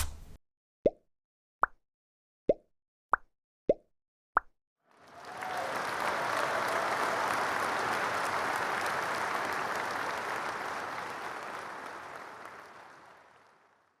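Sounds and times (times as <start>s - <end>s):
crowd applause: 4.9s - 14.0s.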